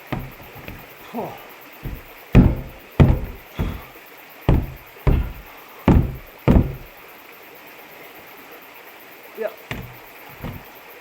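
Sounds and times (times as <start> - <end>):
hollow thumps on metal tank: 0.0 - 1.1, 1.8 - 3.9, 4.5 - 6.9, 9.7 - 10.7.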